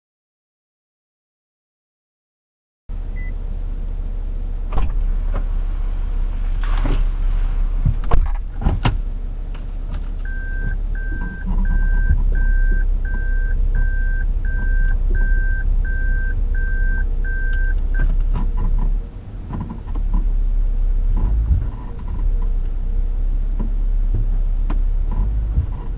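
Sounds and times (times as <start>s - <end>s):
car rumble and drone: 2.9s - 25.9s
short electronic beeps: 10.2s - 18.1s.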